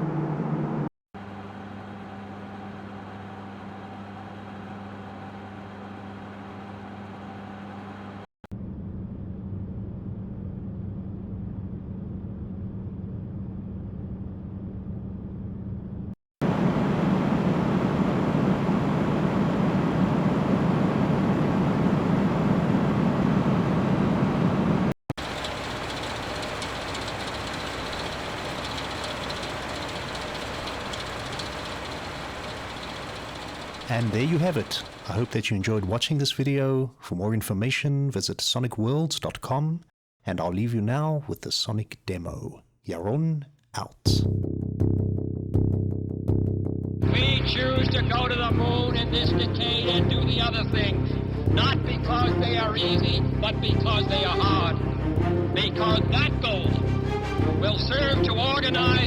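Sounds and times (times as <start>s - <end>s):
mechanical whirring: 25.2s - 35.4s.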